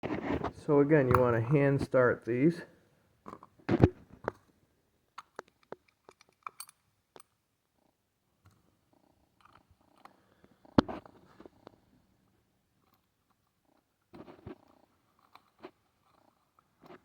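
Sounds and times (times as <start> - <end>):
clicks and taps of screws: 5.2 - 7.4.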